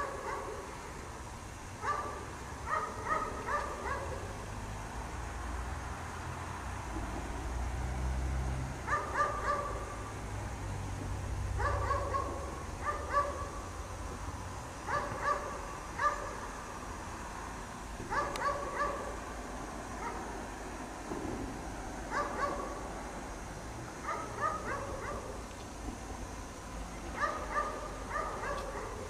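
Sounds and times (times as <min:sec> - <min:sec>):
dog barking: 0:00.0 - 0:00.7, 0:01.8 - 0:04.3, 0:08.9 - 0:09.8, 0:11.6 - 0:13.6, 0:14.9 - 0:16.4, 0:18.1 - 0:19.2, 0:20.0 - 0:20.3, 0:22.1 - 0:22.8, 0:24.0 - 0:25.3, 0:27.2 - 0:29.0.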